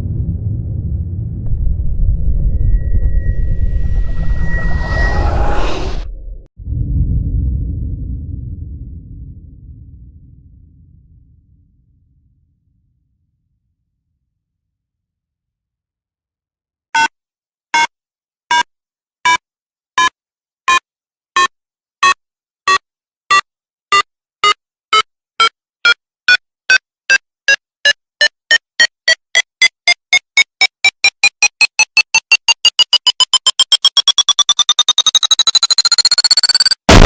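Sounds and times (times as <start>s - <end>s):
electronic timer beeps: 21.4s - 24.6s, 27.5s - 36.9s.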